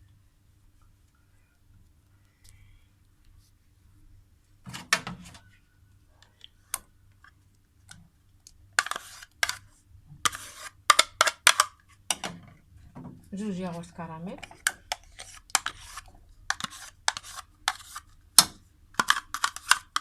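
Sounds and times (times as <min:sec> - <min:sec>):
spoon scraping: 0:08.8 - 0:11.7, 0:14.4 - 0:18.1, 0:19.0 - 0:20.0.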